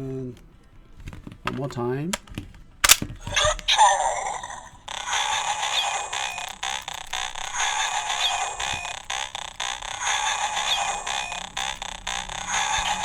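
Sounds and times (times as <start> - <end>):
toy belt electronic loop: 2.8 - 13.0.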